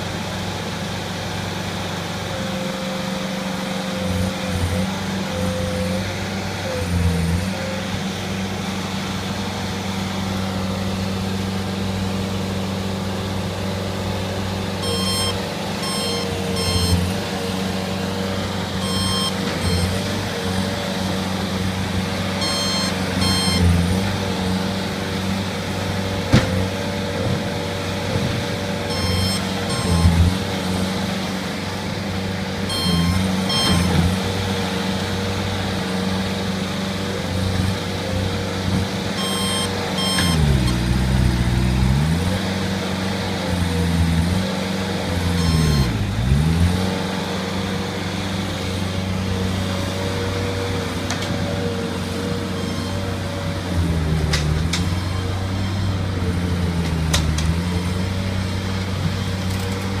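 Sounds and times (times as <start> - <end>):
diesel engine running: 0.0 - 60.0
backup alarm beeping: 14.8 - 17.2, 18.8 - 20.0, 22.4 - 23.8, 28.9 - 30.2, 32.7 - 34.0, 39.2 - 40.8, 45.4 - 45.9.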